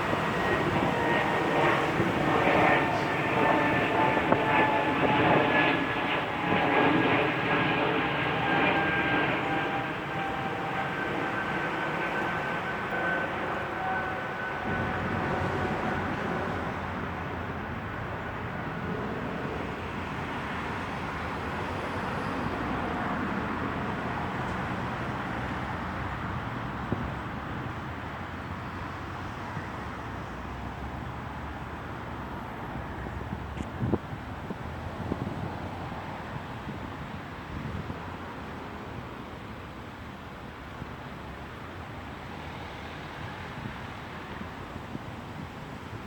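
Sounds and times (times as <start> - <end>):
distant engine drone: 0.0 - 26.1.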